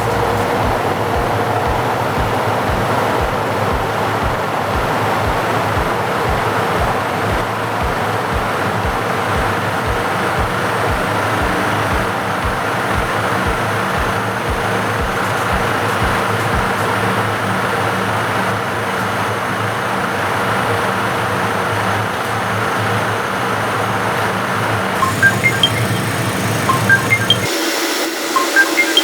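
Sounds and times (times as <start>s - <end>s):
low repeating thud: 0.0s - 16.7s
centrifuge mechanical noise: 25.0s - 29.0s.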